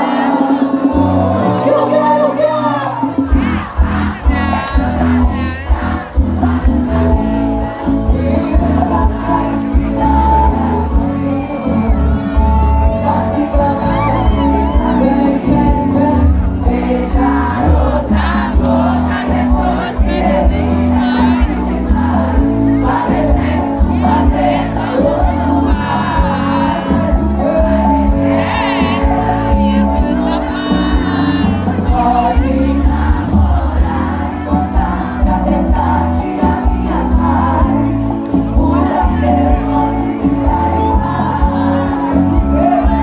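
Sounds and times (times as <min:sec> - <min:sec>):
crowd singing along: 0:00.0 - 0:43.0
live concert music over pa: 0:00.0 - 0:43.0
voices shouting and singing: 0:00.0 - 0:43.0.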